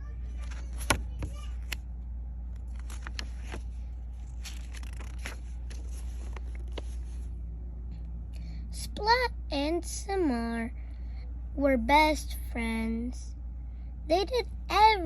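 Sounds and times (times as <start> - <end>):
steady low hum: 0.0 - 15.0
book pages rustling: 0.3 - 1.8, 2.6 - 7.4.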